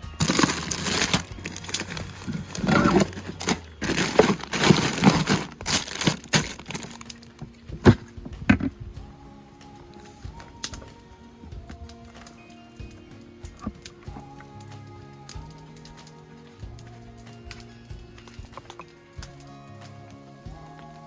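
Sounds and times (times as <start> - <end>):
objects being handled: 0.0 - 8.8.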